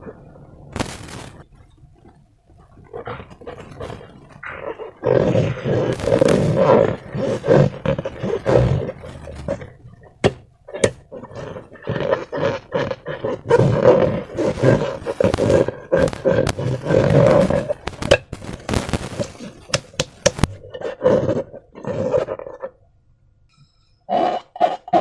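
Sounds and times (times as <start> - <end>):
slime squelching: 0.0 - 22.4
sharp clicks: 14.5 - 20.6.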